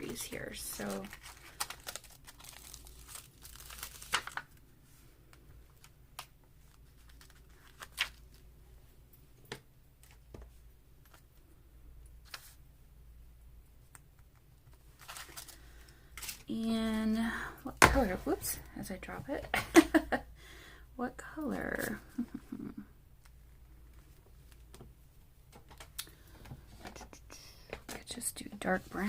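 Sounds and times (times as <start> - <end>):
paper rustling: 0.0 - 4.6, 5.3 - 8.4, 14.7 - 16.4.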